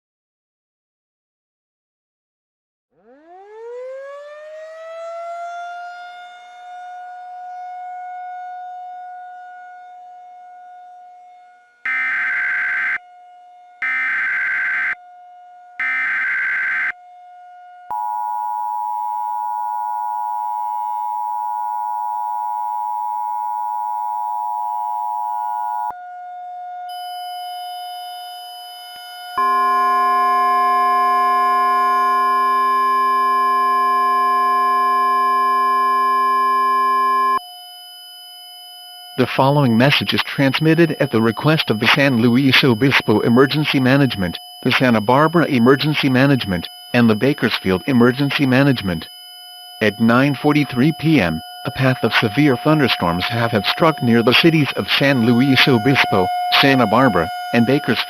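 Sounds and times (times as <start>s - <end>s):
siren winding up: 3.0s - 5.4s, 11.9s - 13.0s, 13.8s - 15.0s, 15.8s - 17.0s, 17.9s - 25.9s, 26.9s - 38.4s, 43.8s - 58.0s
chord of steady tones: 11.9s - 13.0s, 13.8s - 15.0s, 15.8s - 16.9s, 28.8s - 37.4s, 49.8s - 58.0s
data bursts: 11.9s - 13.0s, 13.8s - 15.0s, 15.8s - 16.9s, 40.6s - 49.1s, 49.8s - 58.0s
two-tone attention signal: 11.9s - 13.0s, 13.8s - 15.0s, 15.8s - 16.9s, 17.9s - 25.9s, 29.4s - 37.4s, 49.8s - 58.0s.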